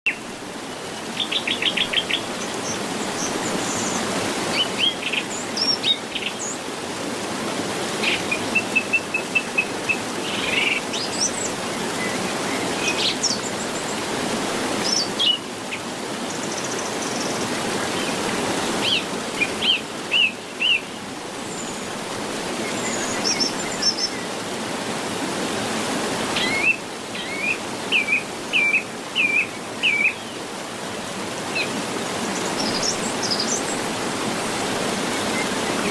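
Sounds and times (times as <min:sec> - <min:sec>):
flowing river rushing: 0:00.1 - 0:35.9.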